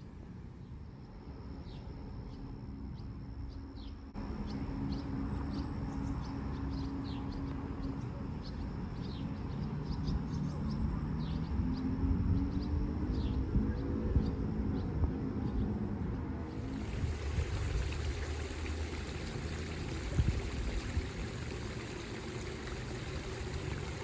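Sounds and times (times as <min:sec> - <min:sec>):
birds chirping: 0:16.5 - 0:24.0
low droning hum: 0:16.5 - 0:24.0.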